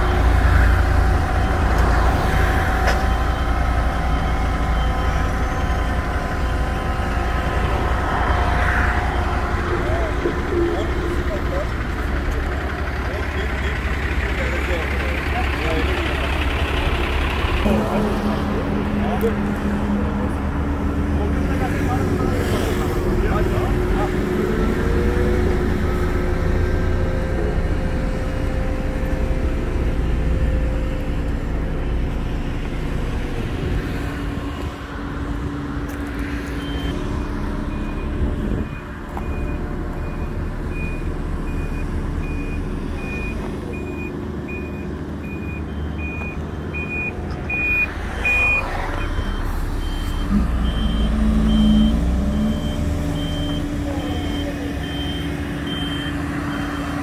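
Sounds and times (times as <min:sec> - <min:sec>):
reversing alarm beeping: 0:00.0 - 0:11.5, 0:36.6 - 0:57.0
heavy truck engines running: 0:00.0 - 0:57.0.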